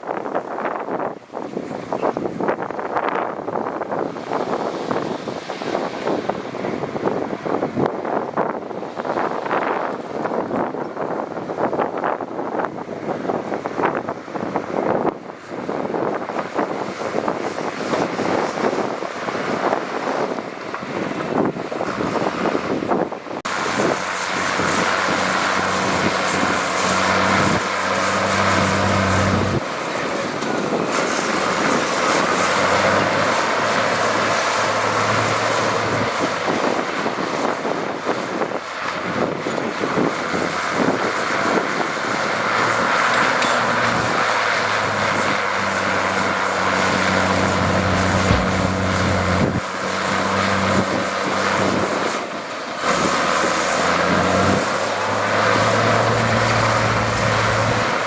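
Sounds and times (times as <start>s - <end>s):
heavy diesel engine under load: 17.8s - 58.0s.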